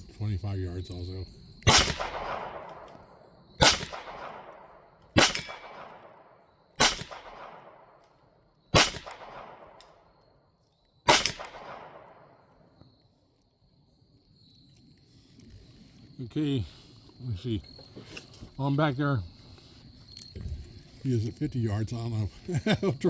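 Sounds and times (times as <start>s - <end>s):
pistol shots: 1.6s - 10.1s, 11.1s - 12.4s
steel target clanging: 5.2s - 5.8s, 11.1s - 11.7s.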